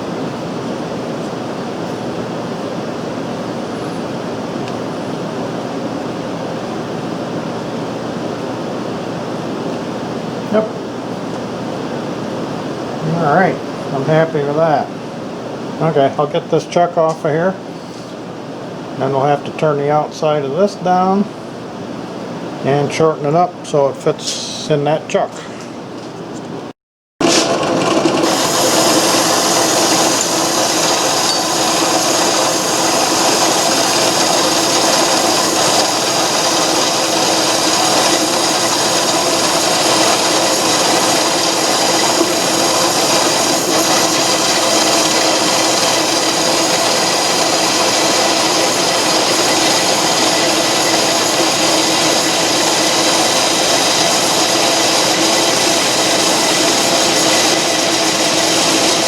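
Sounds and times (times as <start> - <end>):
metal lathe cutting: 27.2 - 59.0.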